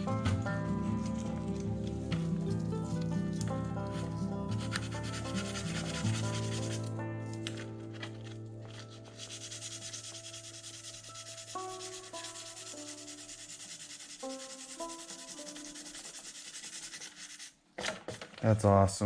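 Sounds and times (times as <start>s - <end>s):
sandpaper rubbing on paint: 3.9s - 6.9s, 8.7s - 17.6s.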